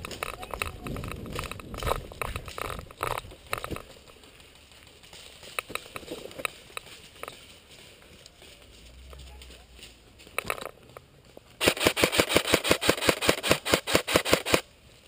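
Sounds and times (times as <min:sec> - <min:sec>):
footsteps crunching over debris: 0:00.0 - 0:11.6
gear and clothing rustling: 0:00.0 - 0:11.6.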